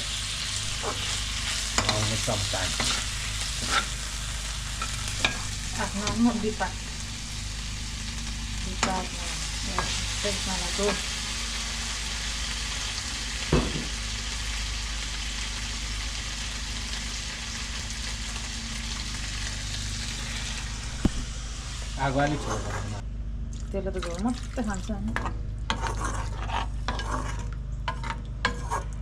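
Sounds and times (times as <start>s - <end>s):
chicken sizzling in a pan: 0.0s - 23.0s.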